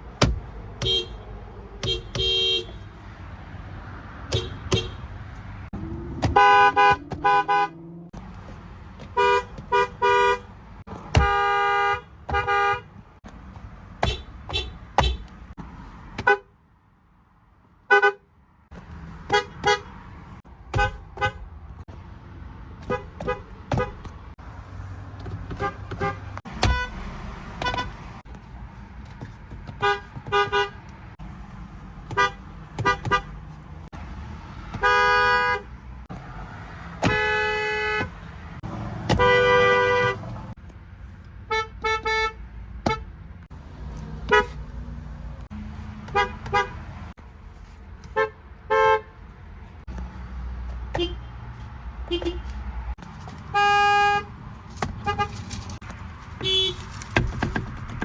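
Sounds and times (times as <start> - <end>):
car horns honking: 0.1 - 3.0, 4.2 - 8.2, 9.0 - 13.0, 14.0 - 15.5, 16.2 - 16.6, 17.8 - 18.3, 19.1 - 21.6, 22.8 - 24.3, 25.2 - 28.3, 29.7 - 31.2, 32.0 - 33.6, 34.7 - 36.1, 37.0 - 40.6, 41.4 - 43.2, 44.2 - 44.7, 46.0 - 47.0, 48.0 - 49.3, 50.9 - 55.8, 56.4 - 56.9.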